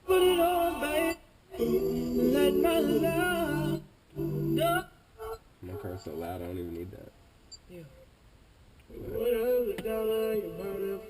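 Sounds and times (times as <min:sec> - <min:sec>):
song on car stereo: 0:00.0 - 0:05.0, 0:08.9 - 0:11.0.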